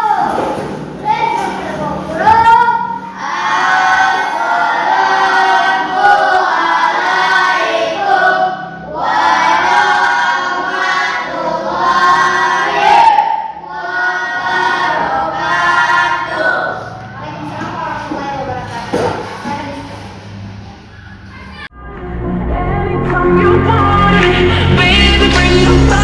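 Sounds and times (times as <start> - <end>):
children singing in unison: 2.0 - 17.7.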